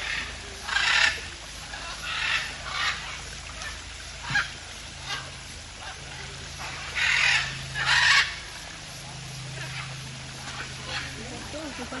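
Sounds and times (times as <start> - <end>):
parrots squawking: 0.0 - 3.1, 6.6 - 8.5, 9.6 - 11.2.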